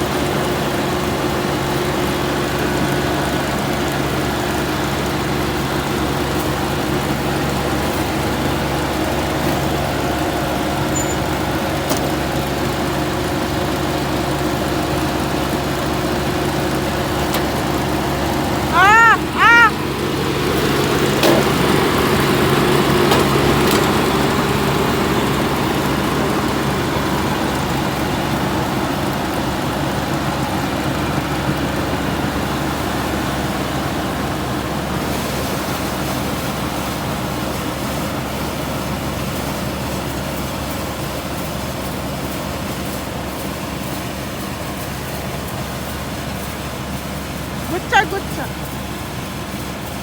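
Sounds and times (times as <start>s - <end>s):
combine harvester engine drone: 0.0s - 50.0s.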